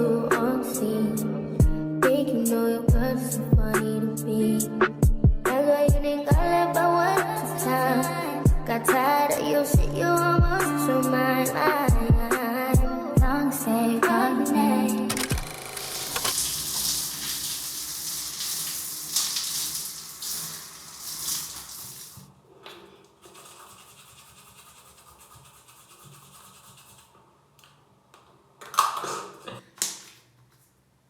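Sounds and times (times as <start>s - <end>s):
water hissing at a sink: 15.8s - 27.1s.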